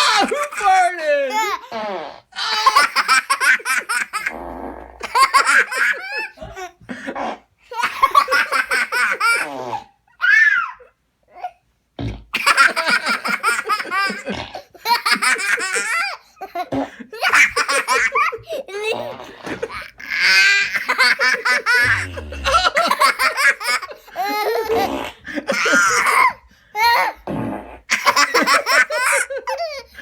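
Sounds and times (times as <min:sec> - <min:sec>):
child giggling: 0:02.4 - 0:04.3, 0:05.0 - 0:06.8, 0:07.7 - 0:09.5, 0:12.4 - 0:27.2, 0:27.9 - 0:29.9
low fart sound: 0:04.2 - 0:05.3, 0:12.0 - 0:12.4, 0:21.7 - 0:23.0, 0:24.6 - 0:25.3, 0:27.0 - 0:27.9.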